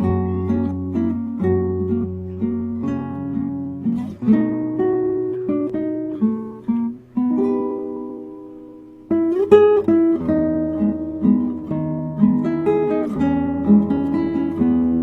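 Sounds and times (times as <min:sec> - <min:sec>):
plucked string music: 0:00.0 - 0:15.0.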